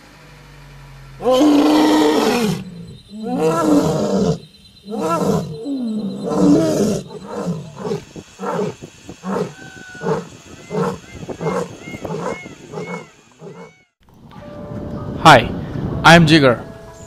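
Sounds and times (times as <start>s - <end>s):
big cat roaring: 1.2s - 13.8s.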